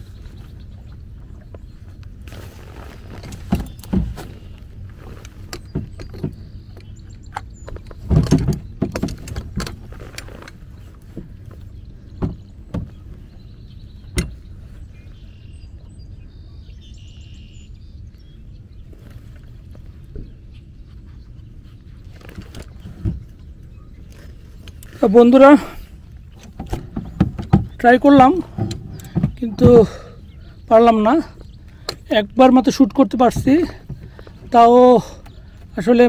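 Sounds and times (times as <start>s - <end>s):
knocks and thumps from boat: 0.0s - 15.2s, 22.1s - 36.0s
steady low rumble: 0.0s - 36.0s
faint bird chirps: 10.7s - 32.2s.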